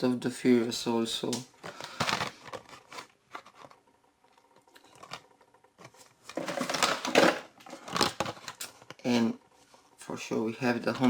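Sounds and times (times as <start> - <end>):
packaging crinkling: 1.6 - 3.8, 6.2 - 9.0.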